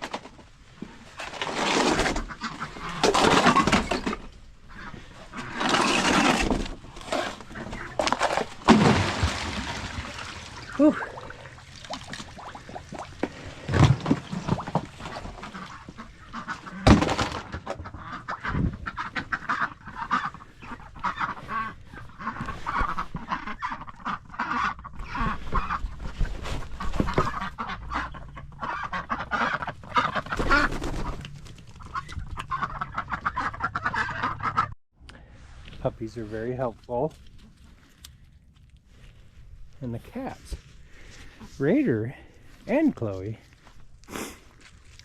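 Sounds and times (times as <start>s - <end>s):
flock of ducks quacking: 2.3s - 3.2s, 4.7s - 5.6s, 15.0s - 25.9s, 26.8s - 31.2s, 31.8s - 34.8s.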